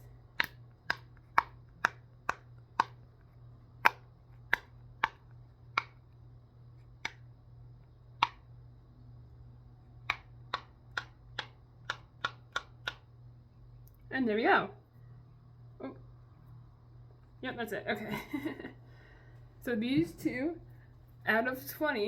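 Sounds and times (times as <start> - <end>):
pop-it toy popping: 0.3 - 3.1, 3.8 - 6.0, 10.0 - 13.1.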